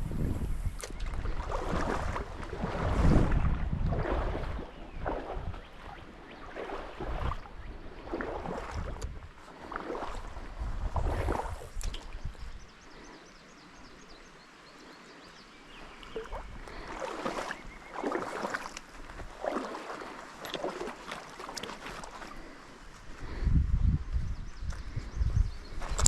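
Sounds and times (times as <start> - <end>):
wind gust on microphone: 0.0 - 12.7, 23.1 - 26.0
wading steps sloshing in water: 0.7 - 13.8, 14.7 - 23.4.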